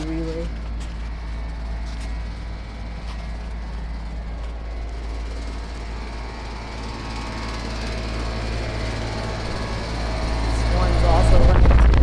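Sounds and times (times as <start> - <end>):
air conditioner units humming: 0.0 - 12.0.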